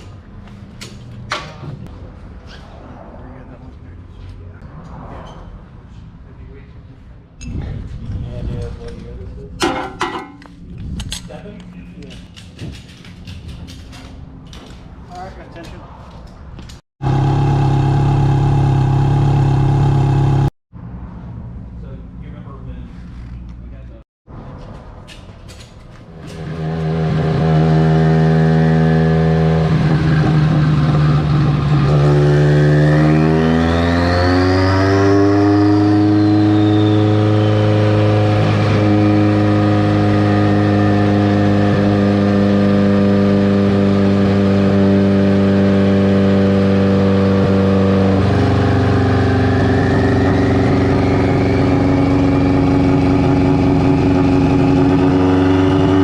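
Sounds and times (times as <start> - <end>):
car engine revving: 17.0 - 20.5, 26.2 - 56.0
high whine: 46.2 - 56.0.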